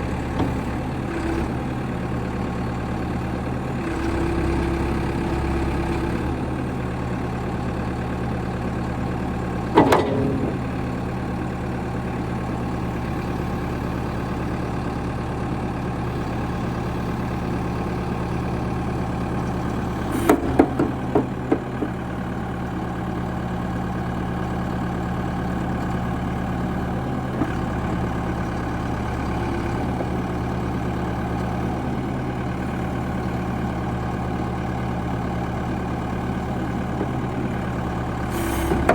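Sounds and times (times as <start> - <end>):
diesel engine idling: 0.0 - 38.9
sharp knocks: 9.8 - 11.1.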